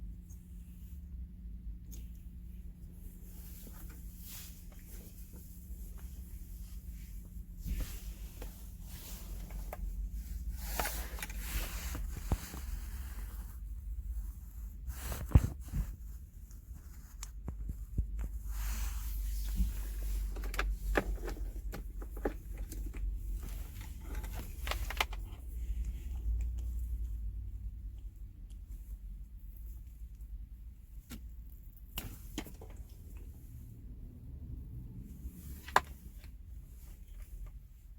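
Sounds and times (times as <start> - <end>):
steady low hum: 0.0 - 37.9
microphone handling clicks and rustles: 1.7 - 27.1, 30.9 - 33.5.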